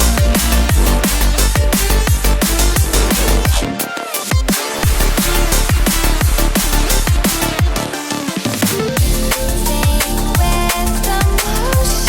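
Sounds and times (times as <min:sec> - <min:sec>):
drum and bass music: 0:00.0 - 0:12.0.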